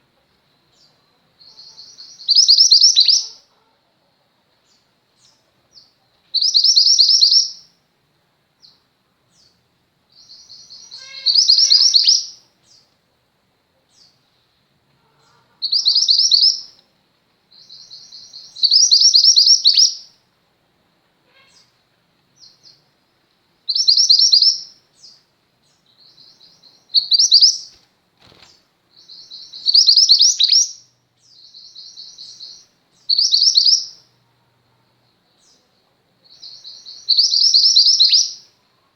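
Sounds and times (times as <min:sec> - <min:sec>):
bird singing trilled phrases: 0:00.7 - 0:03.4, 0:05.2 - 0:07.7, 0:10.2 - 0:12.9, 0:15.6 - 0:16.8, 0:17.5 - 0:20.2, 0:23.7 - 0:27.8, 0:28.4 - 0:34.2, 0:36.3 - 0:38.5
soft bird twittering: 0:10.2 - 0:12.9, 0:23.7 - 0:27.8, 0:28.4 - 0:34.2, 0:35.4 - 0:38.5.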